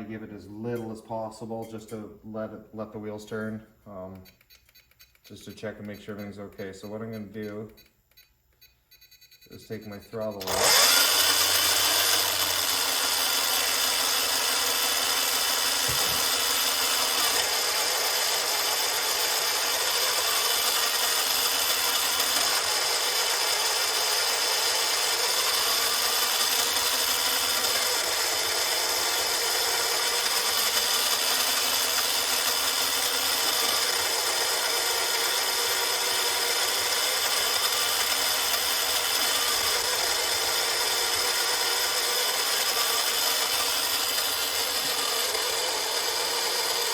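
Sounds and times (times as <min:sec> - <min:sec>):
electric motor whir with gear whine: 0:09.7 - 0:46.9.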